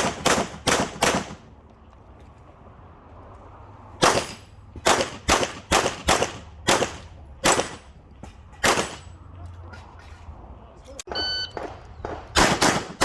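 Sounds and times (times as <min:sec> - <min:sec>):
pistol shots: 0:00.0 - 0:01.4, 0:04.0 - 0:07.8, 0:08.6 - 0:09.0, 0:11.5 - 0:13.0.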